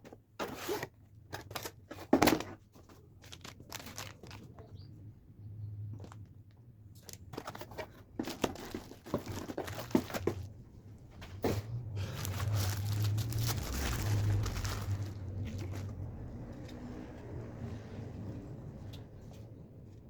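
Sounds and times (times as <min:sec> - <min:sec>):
packaging crinkling and rustling: 0:00.4 - 0:04.7, 0:07.0 - 0:16.2
low steady hum: 0:08.2 - 0:17.4.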